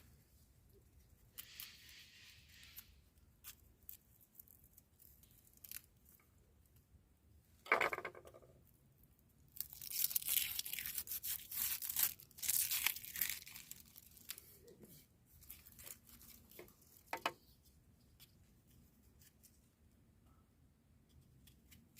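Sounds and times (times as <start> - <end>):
tearing and crinkling: 1.3 - 6.2, 9.5 - 17.1.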